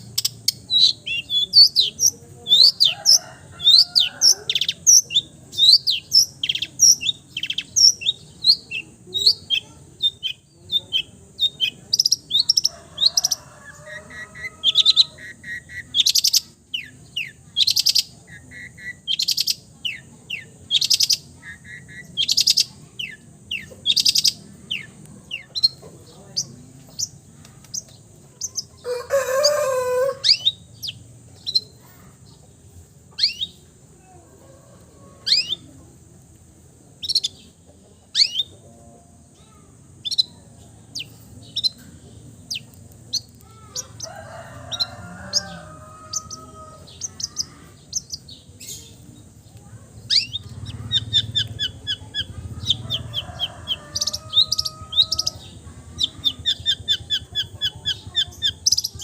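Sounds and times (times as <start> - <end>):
shrike singing bird calls: 26.4 - 31.8, 33.1 - 33.7, 35.1 - 35.7, 38.1 - 38.6, 39.4 - 59.0.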